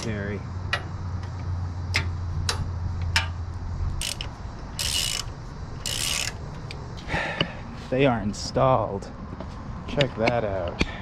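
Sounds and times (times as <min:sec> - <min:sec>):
steady low hum: 0:00.0 - 0:11.0
ratchet wrench clicking: 0:01.9 - 0:06.8.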